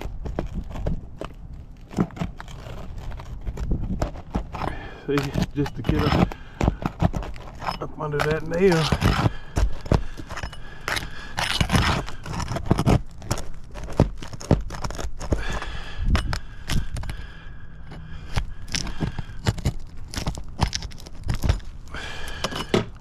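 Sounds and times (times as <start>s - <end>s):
shingle tearing: 0.0s - 23.0s
tool scraping under shingle: 0.0s - 23.0s.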